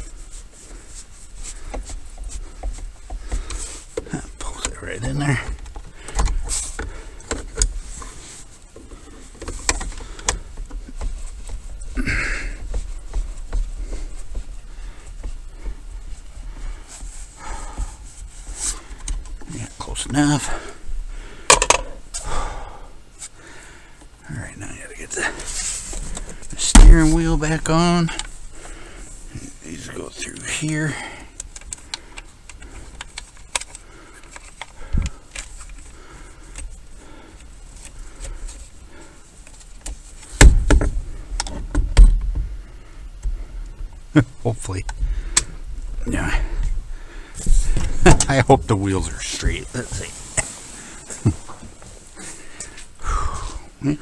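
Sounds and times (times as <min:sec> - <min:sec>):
clicks and taps of parts: 0:21.5 - 0:22.0, 0:31.3 - 0:35.9
dull thump: 0:26.6 - 0:27.4, 0:40.4 - 0:42.5.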